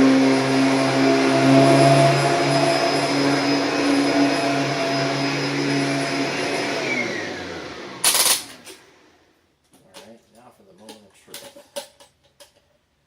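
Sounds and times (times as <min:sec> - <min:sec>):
vacuum cleaner motor whine: 0:00.0 - 0:09.3.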